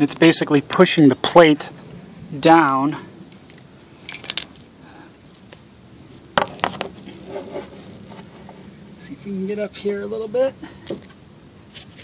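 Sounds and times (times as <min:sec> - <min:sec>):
low background noise: 0:00.0 - 0:12.0
light metallic clicks and clinks: 0:03.4 - 0:04.7.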